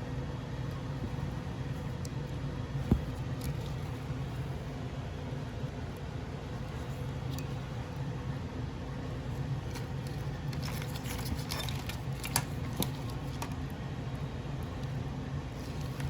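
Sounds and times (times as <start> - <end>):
steady low hum: 0.0 - 16.0
wires and connectors rustling: 0.6 - 4.7, 9.1 - 16.0.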